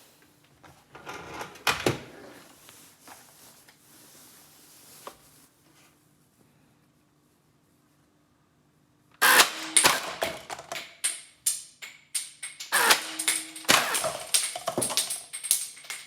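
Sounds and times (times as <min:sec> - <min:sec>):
sharp plastic clicks: 0:09.2 - 0:16.0.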